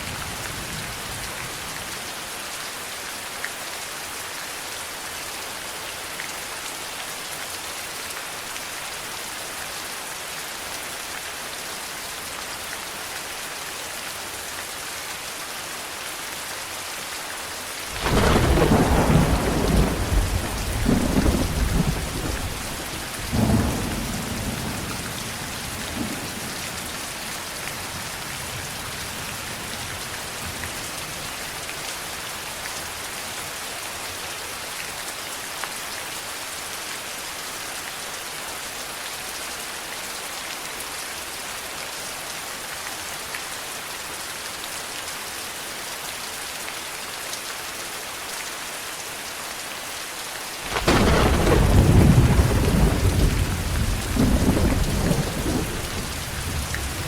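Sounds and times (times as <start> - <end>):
heavy rain hissing: 17.4 - 32.5, 50.5 - 57.0
thunder rumbling: 17.9 - 26.5, 50.7 - 57.0.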